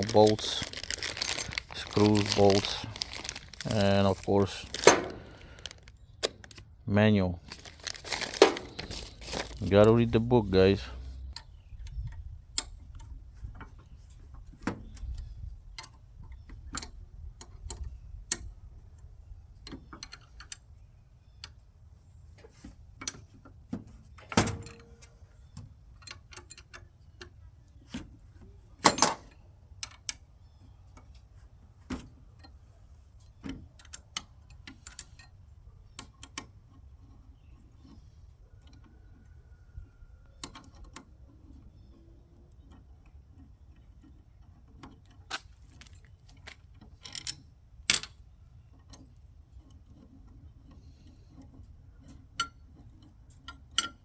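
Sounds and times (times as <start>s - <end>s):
clicks of small parts handled: 45.3s - 48.2s.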